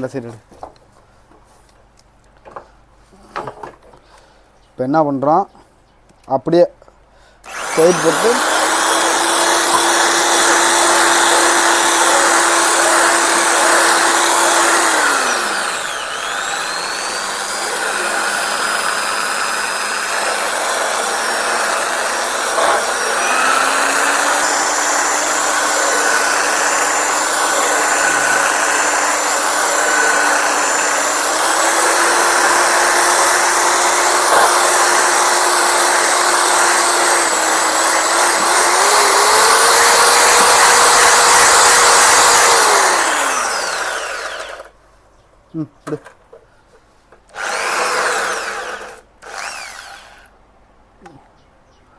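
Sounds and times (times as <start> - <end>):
electric drill whining: 7.4 - 44.7, 47.3 - 50.3.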